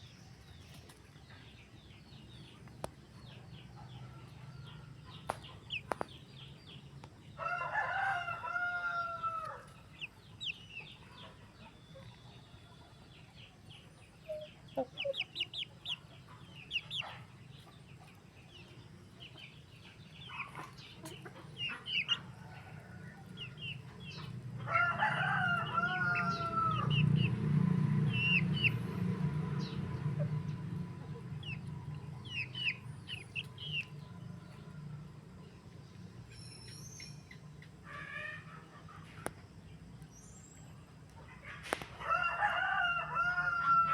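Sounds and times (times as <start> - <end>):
birds chirping and peeping: 0.0 - 43.9
rooster crowing: 7.4 - 9.7, 24.6 - 27.2, 42.0 - 43.9
steady low rumble: 25.6 - 36.2.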